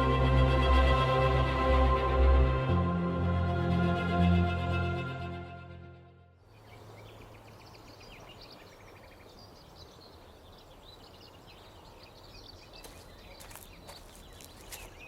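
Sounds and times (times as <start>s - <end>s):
small birds chirping and trilling: 6.4s - 15.0s.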